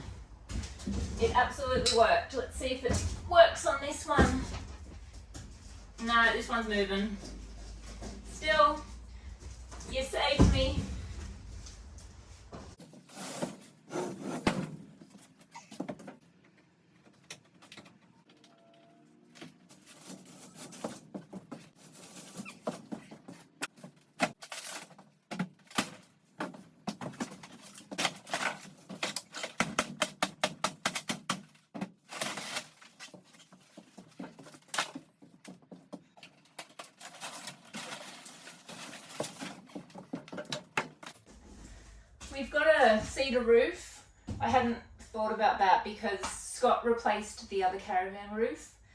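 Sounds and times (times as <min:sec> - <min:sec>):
scraping and handling sounds: 0:00.5 - 0:43.2.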